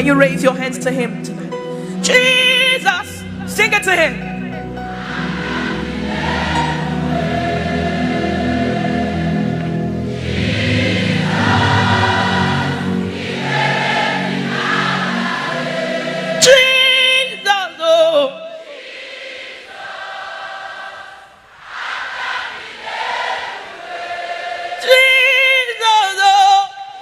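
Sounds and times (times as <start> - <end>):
instrumental accompaniment: 0.1 - 17.1
gospel choir singing: 2.2 - 27.0.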